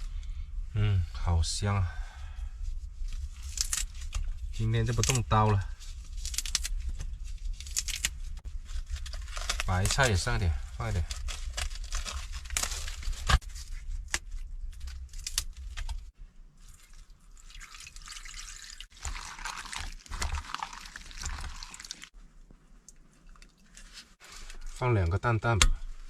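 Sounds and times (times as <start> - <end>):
liquid splashing and bubbling: 16.6 - 22.2.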